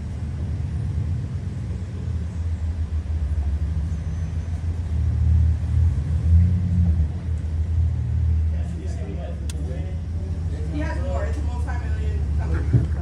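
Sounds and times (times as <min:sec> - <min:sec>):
car engine idling: 0:07.1 - 0:13.0.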